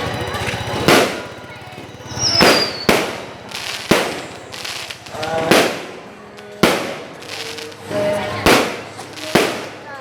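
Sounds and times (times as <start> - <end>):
firework falling whistle: 2.1 - 4.3
firework shells bursting: 2.2 - 10.0.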